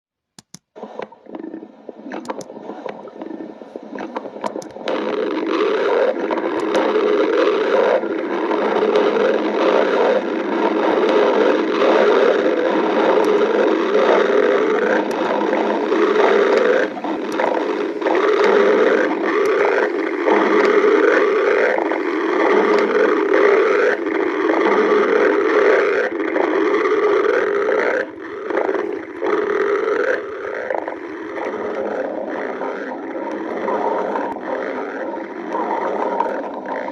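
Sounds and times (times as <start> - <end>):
stomach growling: 0.8 - 36.9.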